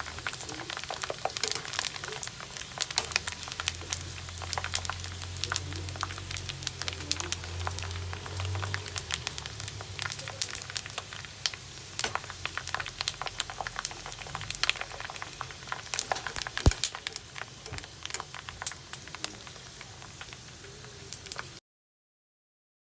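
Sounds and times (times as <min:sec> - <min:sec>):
pork rind crackling in hot oil: 0:00.0 - 0:21.6
sharp pop: 0:16.6 - 0:16.9.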